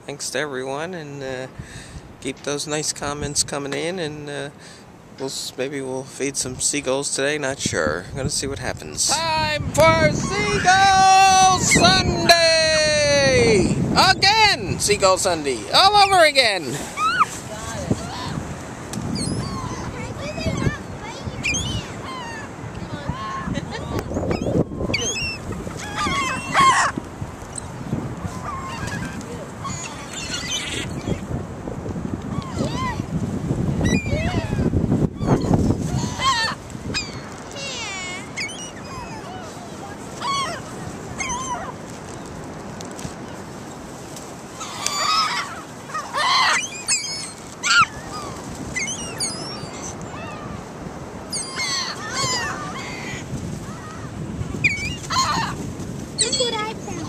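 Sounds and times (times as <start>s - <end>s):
seagulls calling: 9.1s - 14.5s, 15.5s - 31.4s, 32.2s - 33.1s, 33.8s - 42.4s, 44.5s - 57.0s.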